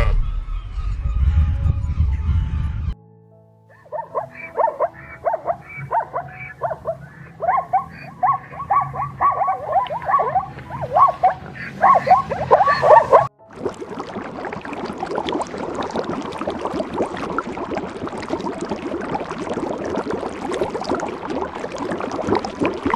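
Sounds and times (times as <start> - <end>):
loud low sound: 0.0 - 3.1
animal swooping calls: 3.7 - 13.3.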